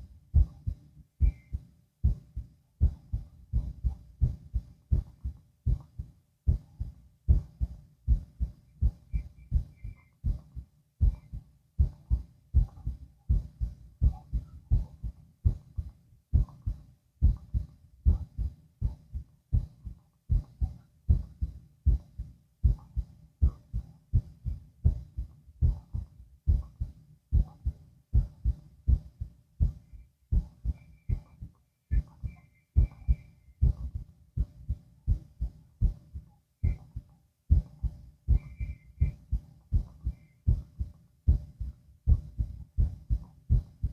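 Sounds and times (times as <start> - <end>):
heartbeat thumps: 0.0 - 43.9.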